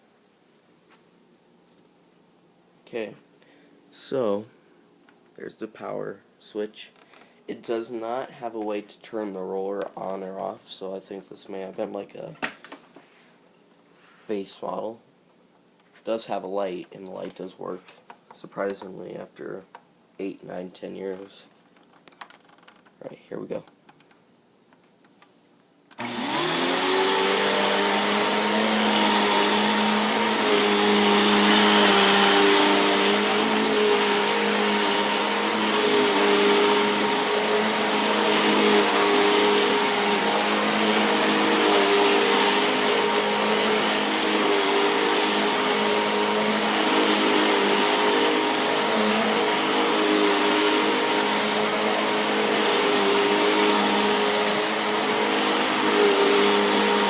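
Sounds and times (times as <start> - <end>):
vacuum cleaner motor whining: 26.0 - 57.0.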